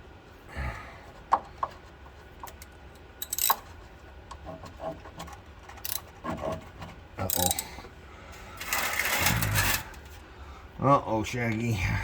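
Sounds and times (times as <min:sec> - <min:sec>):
metal hand tools clinking: 0:03.2 - 0:03.6, 0:07.3 - 0:07.7.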